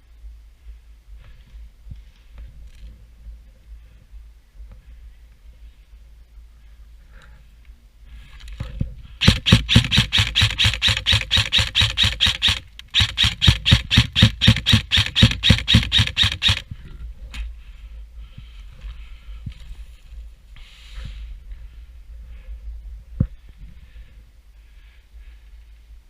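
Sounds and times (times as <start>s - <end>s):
airsoft gun rapid firing: 9.2s - 16.7s.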